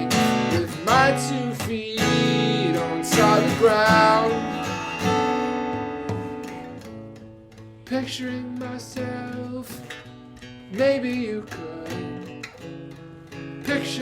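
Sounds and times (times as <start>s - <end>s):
man singing sliding notes: 0.0s - 4.6s, 13.7s - 14.0s
acoustic guitar strummed in chords: 0.0s - 14.0s.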